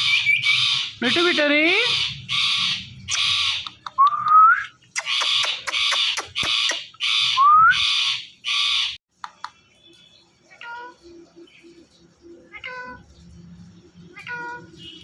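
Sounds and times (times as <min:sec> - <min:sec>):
parrot screeching: 0:00.0 - 0:03.8, 0:05.0 - 0:09.0.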